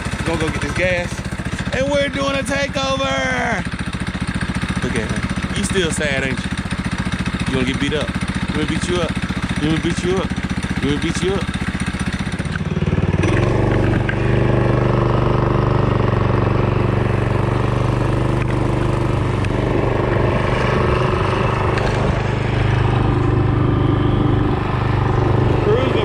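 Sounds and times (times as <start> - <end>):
small engine running steadily: 0.0 - 26.0.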